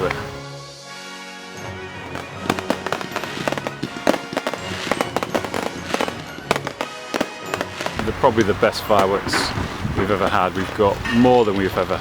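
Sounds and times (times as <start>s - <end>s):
music playing: 0.0s - 9.5s
fireworks bangs and crackles: 2.0s - 12.0s.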